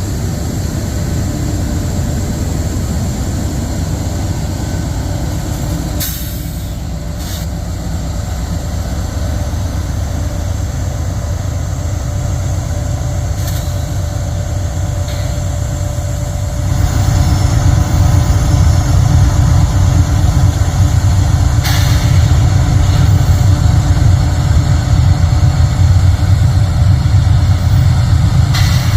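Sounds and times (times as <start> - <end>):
locomotive engine rumble: 0.0 - 28.9.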